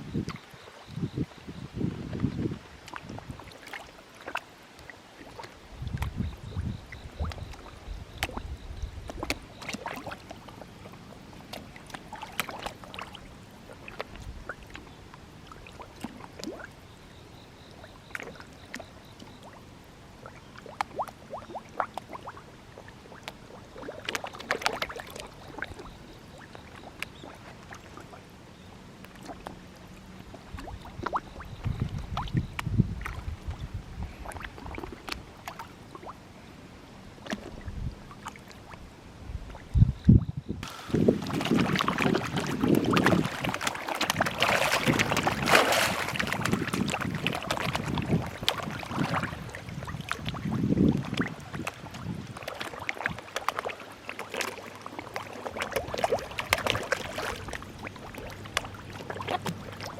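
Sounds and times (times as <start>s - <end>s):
fish splashing at water surface: 11.5s - 13.2s, 23.8s - 28.1s, 40.6s - 59.9s.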